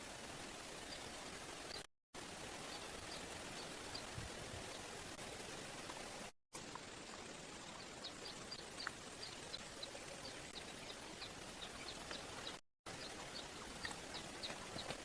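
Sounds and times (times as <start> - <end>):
faint forest hiss: 0.0 - 15.0
small bird chipping: 7.8 - 15.0.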